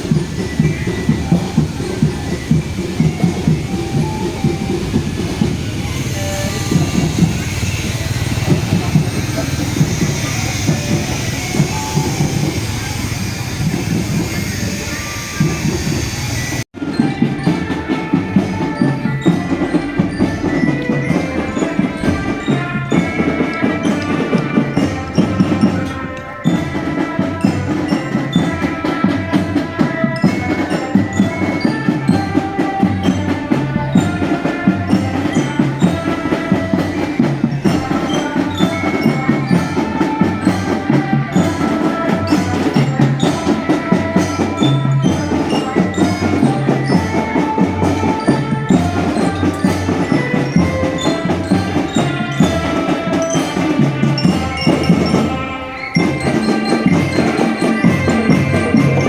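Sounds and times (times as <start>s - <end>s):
bell lyre melody: 0.0s - 59.0s
marching drums beating: 0.0s - 59.0s.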